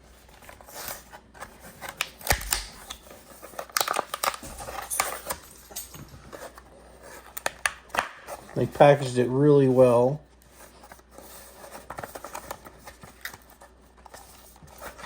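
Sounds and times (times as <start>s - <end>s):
packaging crinkling and rustling: 0.0s - 9.1s, 10.4s - 15.0s
packaging clicks and snaps: 0.8s - 5.4s.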